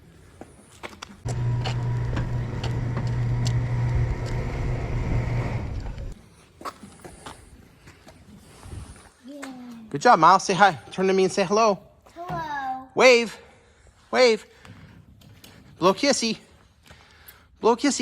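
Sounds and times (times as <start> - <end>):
motor humming: 1.2 - 6.2.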